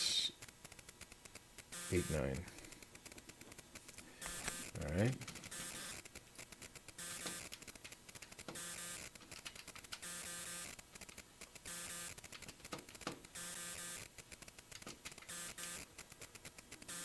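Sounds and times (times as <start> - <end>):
machine humming: 1.7 - 2.8, 4.0 - 6.1
fast mechanical clatter: 2.6 - 13.4, 14.0 - 17.0.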